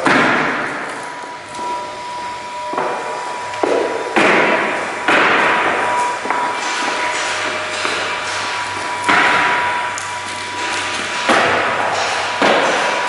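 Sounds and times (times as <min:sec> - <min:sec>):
faint steady high tone: 0:01.1 - 0:04.0.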